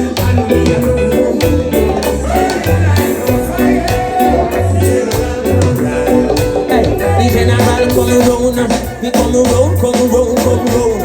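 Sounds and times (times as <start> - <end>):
person singing: 0.0 - 11.0
reggae music: 0.0 - 11.0.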